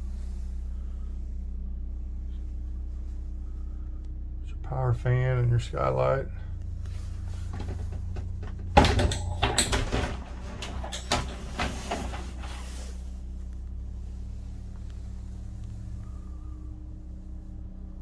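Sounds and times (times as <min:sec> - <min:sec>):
steady low hum: 0:00.0 - 0:18.0
cabinet doors knocking and clattering: 0:07.6 - 0:12.5.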